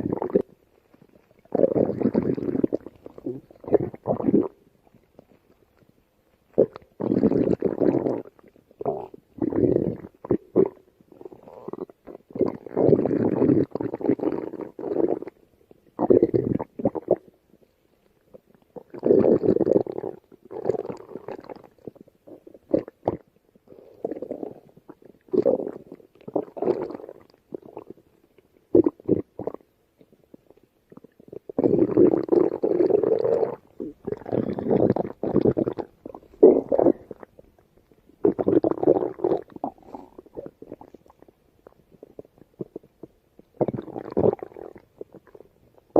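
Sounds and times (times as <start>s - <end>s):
stomach growling and gurgling: 0.0s - 45.9s.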